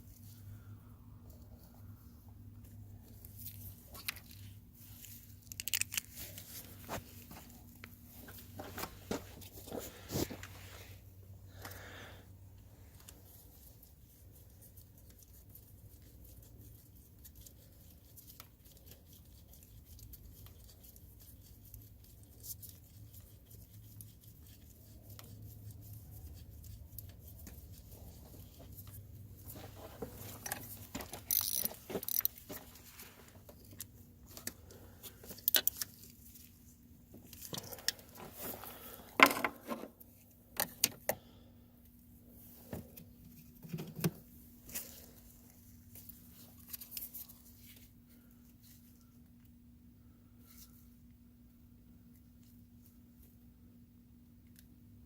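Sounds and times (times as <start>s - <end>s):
faint low hum: 0.0s - 55.0s.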